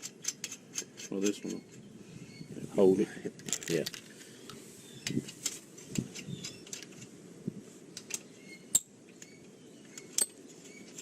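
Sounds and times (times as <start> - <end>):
metal tools clinking: 3.4 - 4.0.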